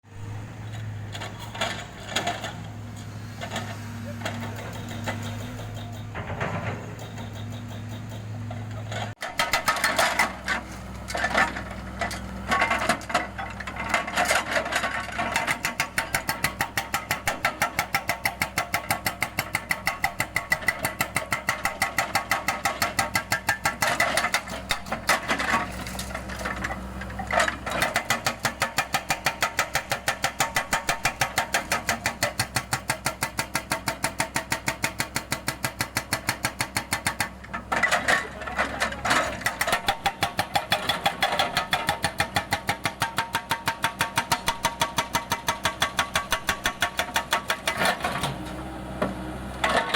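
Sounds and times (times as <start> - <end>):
excavator engine running: 0.1 - 49.9
hydraulic breaker hammering concrete: 4.2 - 8.3, 13.9 - 25.7, 27.4 - 38.0, 39.2 - 48.4.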